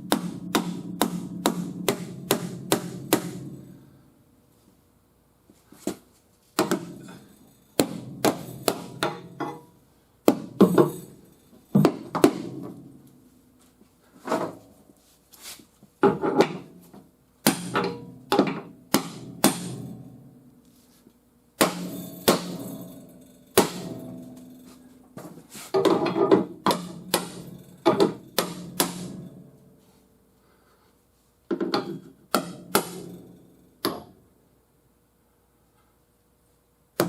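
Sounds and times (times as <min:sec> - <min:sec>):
hammer blows on sheet metal: 0:00.0 - 0:03.9, 0:06.6 - 0:09.6, 0:17.4 - 0:20.1, 0:21.6 - 0:24.9, 0:26.6 - 0:29.7, 0:32.3 - 0:33.4.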